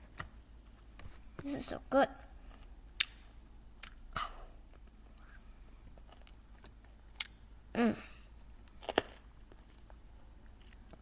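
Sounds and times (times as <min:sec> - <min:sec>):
candy clicking against teeth: 0:03.0 - 0:04.2, 0:06.2 - 0:07.4.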